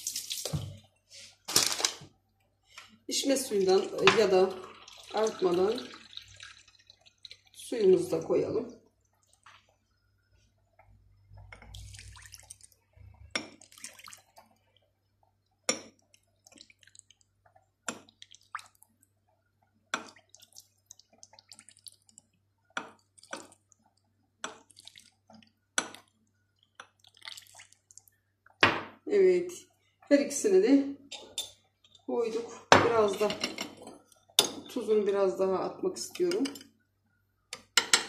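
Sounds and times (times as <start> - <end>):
water pouring into bottles: 3.4 - 10.1, 11.0 - 14.8, 15.8 - 19.1, 20.0 - 28.2
sharp drips and taps: 10.8 - 19.1, 19.9 - 28.7.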